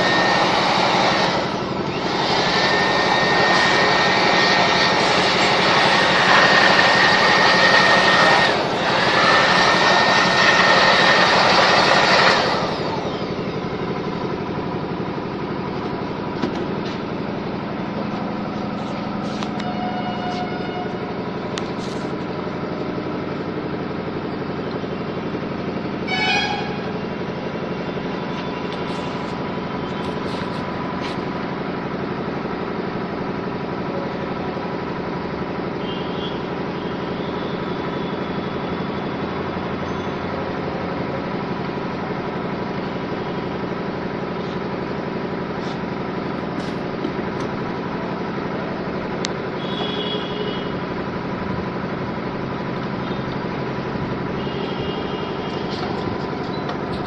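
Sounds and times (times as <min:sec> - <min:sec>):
loud rushing noise: 0:00.0 - 0:24.1
steady motor hum: 0:00.0 - 0:57.0.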